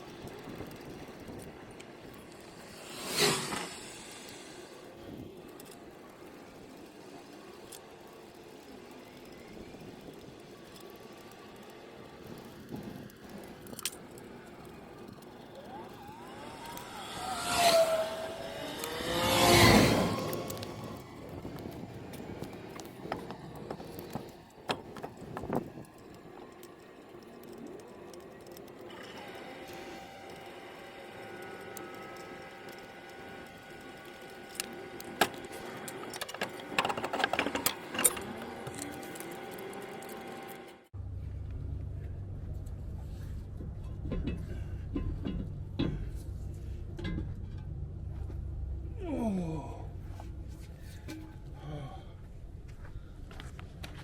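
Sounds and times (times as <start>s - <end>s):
steady hum: 0.0s - 54.0s
vehicles driving past: 1.6s - 4.9s, 14.3s - 24.6s
metal clatter: 35.9s - 39.2s, 43.6s - 48.5s
metal tools clinking and clanking: 35.9s - 39.2s.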